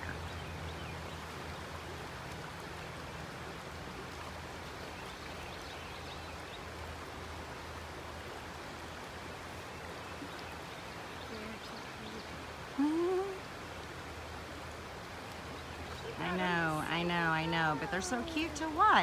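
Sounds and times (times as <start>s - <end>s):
river water rushing: 0.1s - 19.0s
low steady hum: 15.2s - 19.0s.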